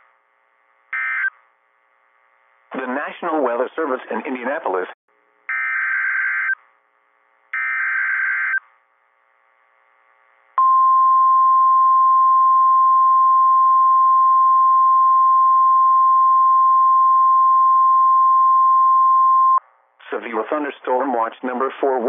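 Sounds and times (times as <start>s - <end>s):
single-pitch warning alarm tone: 1.0s - 1.3s, 5.5s - 6.6s, 7.6s - 8.6s
radio hiss: 20.0s - 22.0s.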